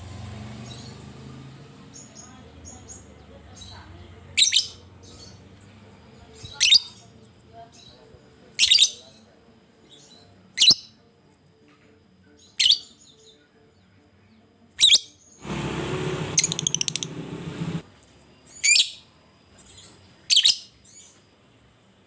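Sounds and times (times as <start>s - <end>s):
lovebird shrill calls: 16.4s - 17.1s.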